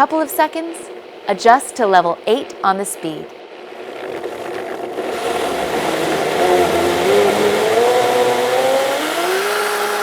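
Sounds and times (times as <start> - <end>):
blender motor whining: 4.0 - 10.0.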